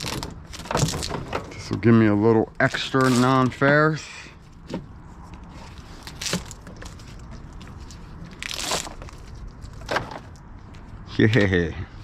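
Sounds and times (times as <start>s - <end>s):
wire insulation crunching in stripper: 0.0s - 1.3s, 8.3s - 9.2s.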